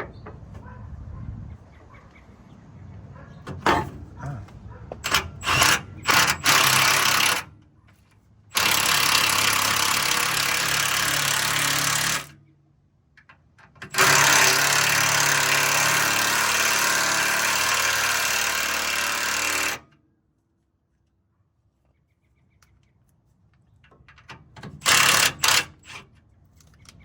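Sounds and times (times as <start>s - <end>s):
impact wrench hammering: 5.0s - 7.5s.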